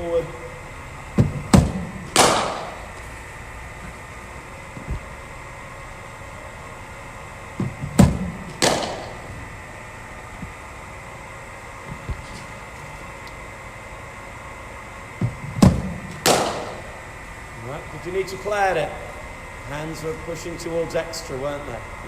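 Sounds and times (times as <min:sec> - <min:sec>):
cricket ball knocks with echo: 0:01.2 - 0:02.8, 0:07.6 - 0:09.2, 0:15.2 - 0:16.9.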